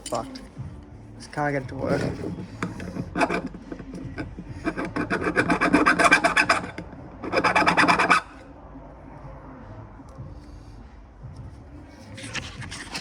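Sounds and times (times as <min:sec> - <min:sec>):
hand tool rasping on metal: 0:01.9 - 0:08.4.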